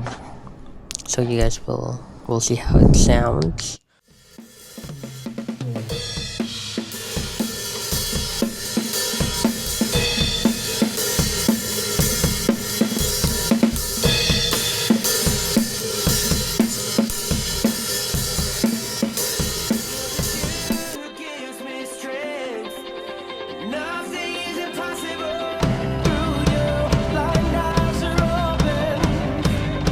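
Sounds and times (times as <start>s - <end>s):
drum kit groove: 4.0s - 21.0s, 25.6s - 29.9s.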